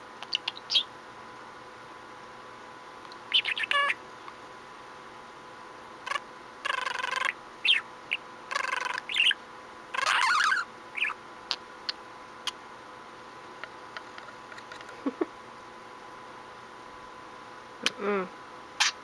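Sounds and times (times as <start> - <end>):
budgerigar chirping and chattering: 0.2 - 0.9, 3.3 - 4.0, 6.1 - 9.4, 10.0 - 12.0, 18.8 - 19.0.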